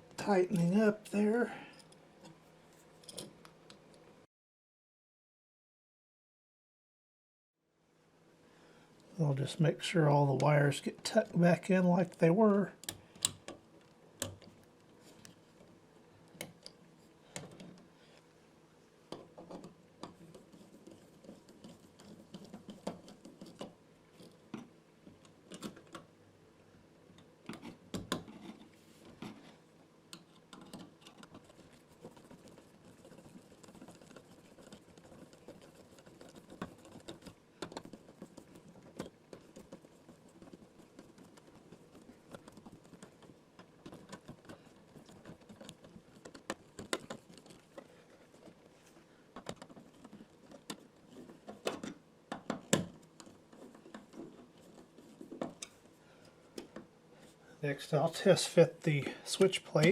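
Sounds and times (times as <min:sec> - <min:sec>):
wiring clicks and scraping: 0:19.1 - 0:26.1, 0:27.1 - 0:58.2, 0:58.9 - 0:59.9.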